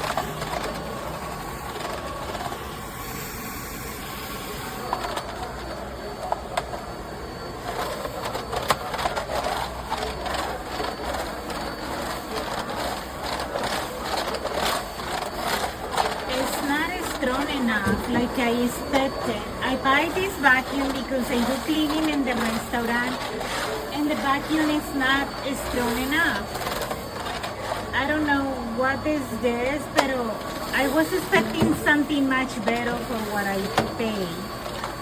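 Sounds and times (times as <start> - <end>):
debris clicks in vacuum: 0.0 - 3.4, 4.0 - 28.2
vacuum cleaner running: 0.0 - 35.0.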